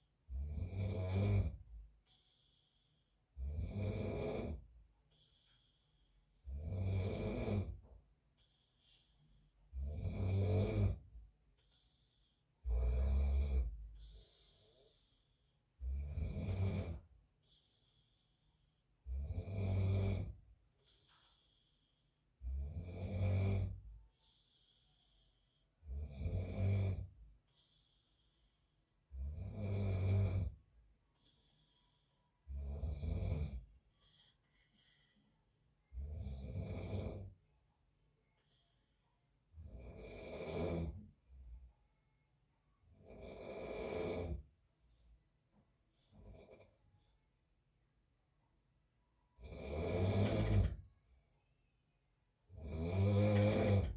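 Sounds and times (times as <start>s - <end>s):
quiet breathing: 0.0s - 53.9s
man snoring: 0.3s - 1.7s, 3.4s - 4.7s, 6.4s - 7.8s, 9.7s - 11.1s, 12.6s - 15.0s, 15.8s - 17.1s, 19.0s - 20.4s, 22.4s - 23.8s, 25.8s - 27.2s, 29.1s - 30.6s, 32.5s - 33.7s, 36.0s - 37.4s, 39.6s - 41.0s, 43.0s - 44.4s, 49.4s - 50.8s, 52.6s - 53.9s.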